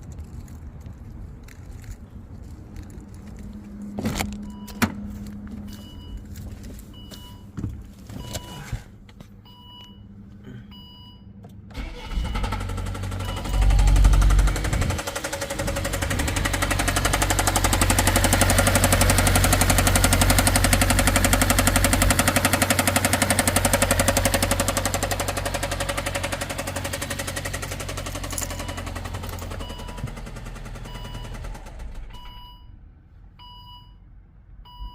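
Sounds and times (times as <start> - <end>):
car engine knocking: 11.8 - 32.2.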